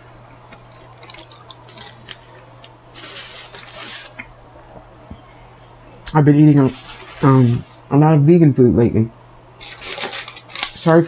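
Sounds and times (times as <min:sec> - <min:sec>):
person chewing and lip-smacking: 0:00.6 - 0:02.8.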